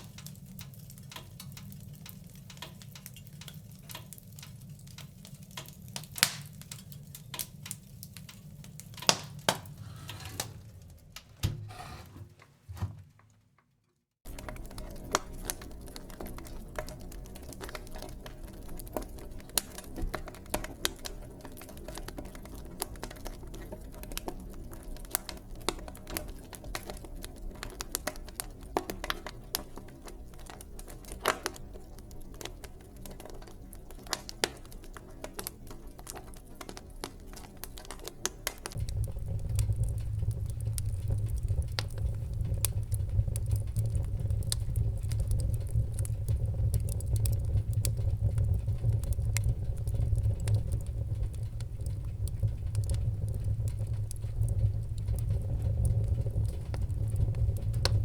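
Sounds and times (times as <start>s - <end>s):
wood fire crackling: 0.0s - 12.0s, 14.2s - 58.0s
low rumble: 38.5s - 58.0s.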